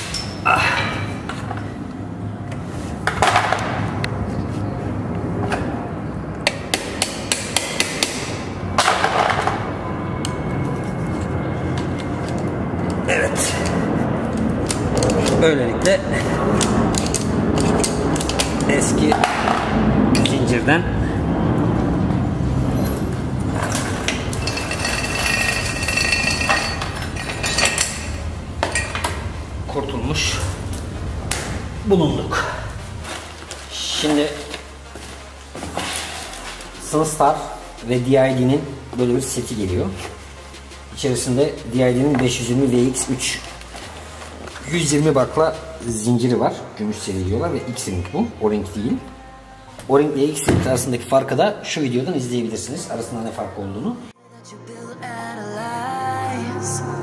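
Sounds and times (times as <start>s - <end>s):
metal chain clinking: 0.0s - 1.0s, 22.8s - 29.6s
steady low hum: 0.0s - 51.7s
hammer striking metal: 6.5s - 9.6s.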